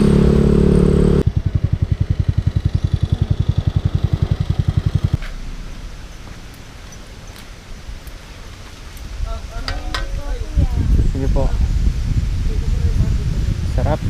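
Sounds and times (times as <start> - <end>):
motorcycle engine idling: 0.0 - 7.6.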